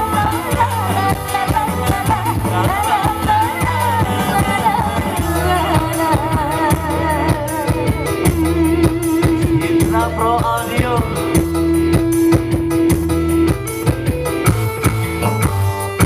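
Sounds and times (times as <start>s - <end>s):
person singing: 0.0s - 12.8s
bass line: 0.0s - 16.0s
percussion beat: 0.0s - 16.0s.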